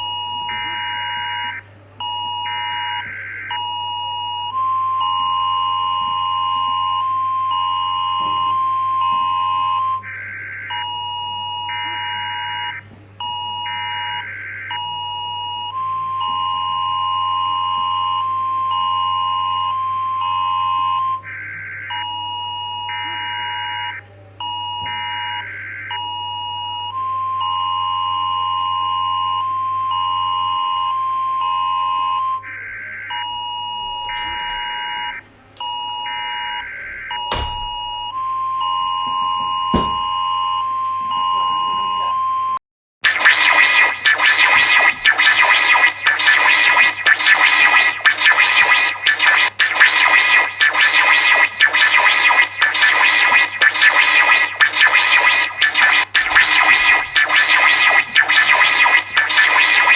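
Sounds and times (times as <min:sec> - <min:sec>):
loud harsh noise: 0:33.2 - 0:38.2, 0:43.1 - 0:59.9
electronic two-tone beeping: 0:33.2 - 0:40.6, 0:49.1 - 0:59.9
sharp clicks: 0:33.8 - 0:38.2, 0:43.1 - 0:59.9
buzzing data bursts: 0:43.1 - 0:59.9.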